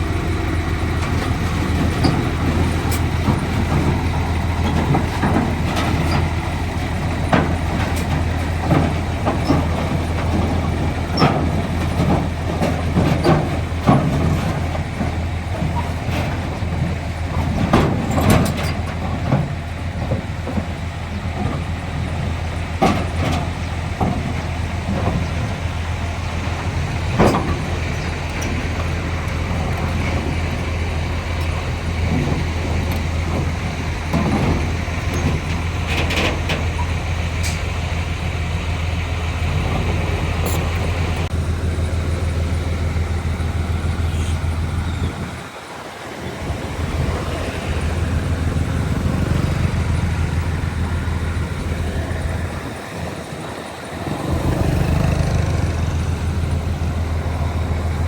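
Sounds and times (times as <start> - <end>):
diesel machinery engine drone: 0.0 - 58.0
metallic clanks and squeals: 1.0 - 38.8, 39.4 - 41.3, 44.0 - 45.5.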